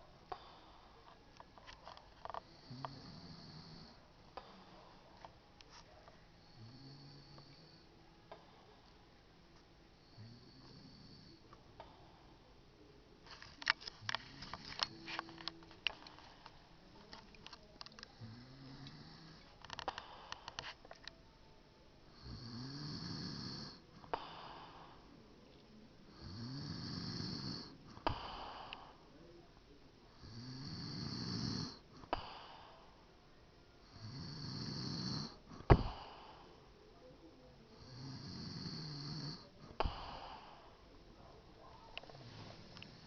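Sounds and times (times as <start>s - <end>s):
man snoring: 2.4s - 4.0s, 6.5s - 7.8s, 10.0s - 11.4s, 18.1s - 20.2s, 22.2s - 24.9s, 26.2s - 28.8s, 30.2s - 32.6s, 33.9s - 36.3s, 37.8s - 40.6s.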